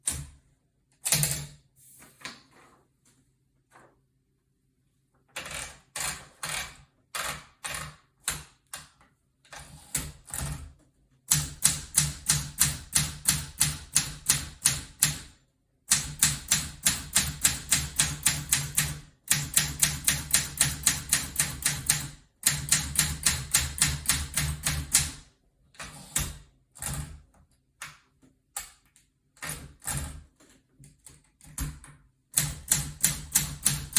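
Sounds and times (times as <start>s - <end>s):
typewriter keystrokes: 11.3s - 15.3s, 15.9s - 25.2s, 32.4s - 33.9s.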